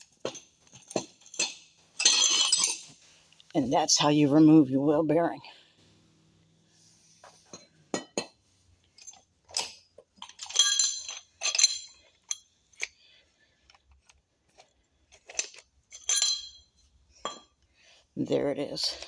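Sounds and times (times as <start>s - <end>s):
steel parts clinking: 0.0s - 3.4s, 9.0s - 13.0s, 15.1s - 17.6s.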